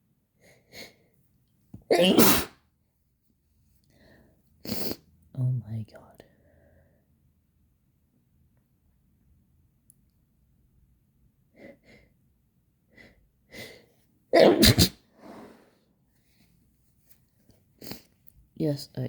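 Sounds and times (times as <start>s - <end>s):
breath catches before sneeze: 1.9s - 2.6s, 14.4s - 15.6s
muffled sneeze: 1.9s - 2.6s, 14.4s - 15.5s
soft breath out: 15.1s - 16.4s.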